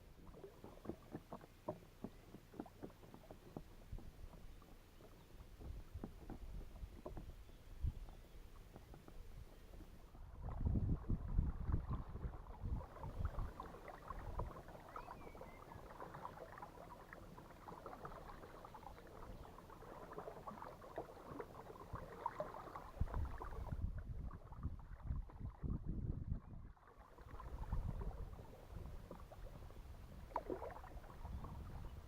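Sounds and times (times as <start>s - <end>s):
water splashing off paddles: 8.0s - 25.8s, 26.8s - 32.0s.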